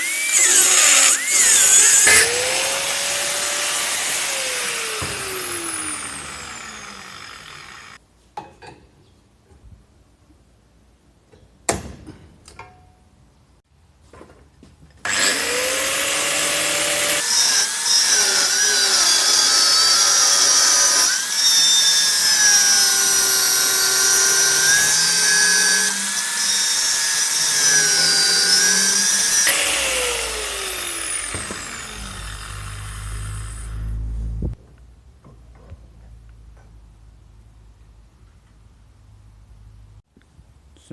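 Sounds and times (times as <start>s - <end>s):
power tool motor whining: 0.0s - 8.0s, 15.1s - 34.0s.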